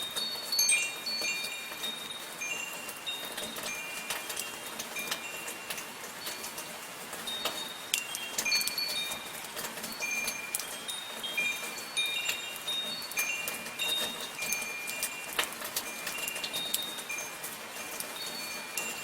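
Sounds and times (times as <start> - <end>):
metal wind chimes ringing: 0.0 - 19.0
soft rain pattering: 0.0 - 19.0.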